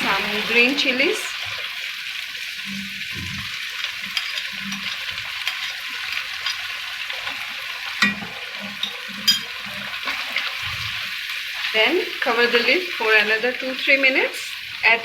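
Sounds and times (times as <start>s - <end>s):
curry sizzling in a frying pan: 0.0s - 15.0s
spoon stirring: 2.6s - 11.1s.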